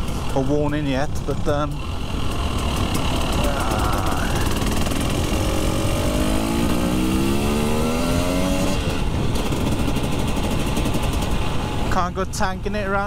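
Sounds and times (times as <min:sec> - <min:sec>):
road and wind noise: 0:00.0 - 0:13.0
motorcycle engine accelerating: 0:01.4 - 0:11.9.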